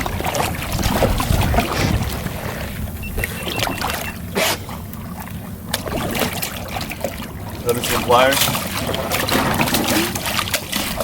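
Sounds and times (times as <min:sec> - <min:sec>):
wind rumbling on microphone: 0:00.0 - 0:04.3
water slapping boat hull: 0:00.0 - 0:11.0.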